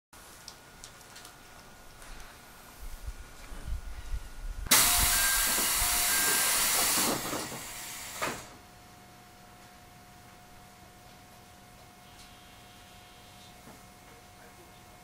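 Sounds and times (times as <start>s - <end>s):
compressed air hissing: 4.7s - 8.6s.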